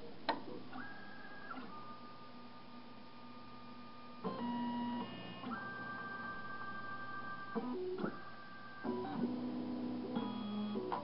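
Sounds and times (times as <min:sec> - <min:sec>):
machine motors whining: 0:04.2 - 0:09.5.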